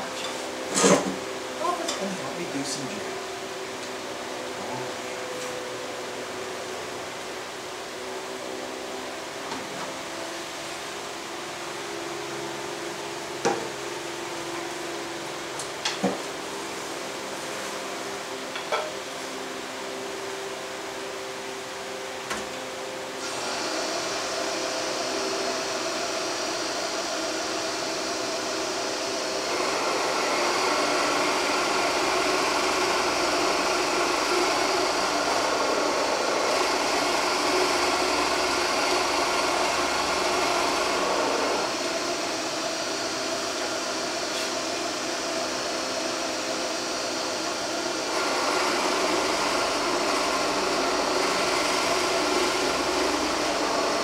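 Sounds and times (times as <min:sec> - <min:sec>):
drill press running: 0:21.7 - 0:54.0.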